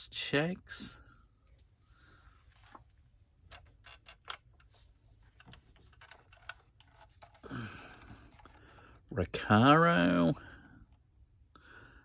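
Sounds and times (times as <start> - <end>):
small clicks of model car handled: 3.5 - 4.8, 5.4 - 7.4.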